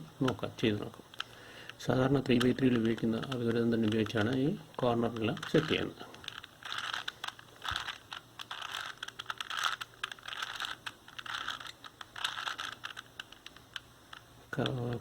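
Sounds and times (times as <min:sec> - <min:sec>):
plastic puzzle cube clicking: 0:01.1 - 0:15.0.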